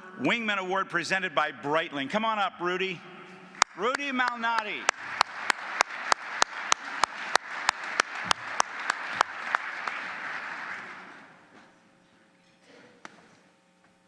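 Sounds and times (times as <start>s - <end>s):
loud even hand clapping: 3.5s - 11.5s
audience applauding: 3.6s - 11.5s.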